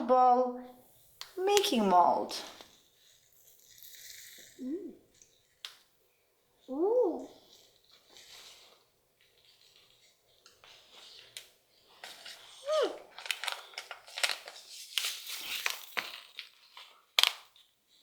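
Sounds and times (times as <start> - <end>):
plastic crinkling: 7.4 - 18.0.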